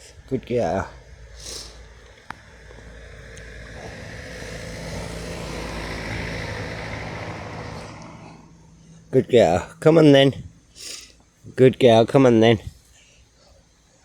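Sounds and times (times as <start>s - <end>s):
vehicle passing by: 0.0s - 10.8s.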